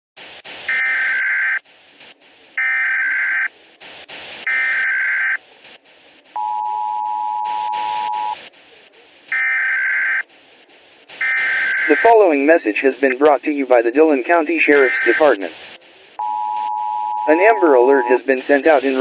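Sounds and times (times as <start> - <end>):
hiss and clicks: 0.2 - 19.0
screeching digital data bursts: 0.7 - 1.6, 4.4 - 5.4, 6.4 - 8.4, 11.2 - 13.2, 14.8 - 15.4, 16.2 - 18.8
two-tone attention signal: 6.4 - 8.4, 16.2 - 18.2.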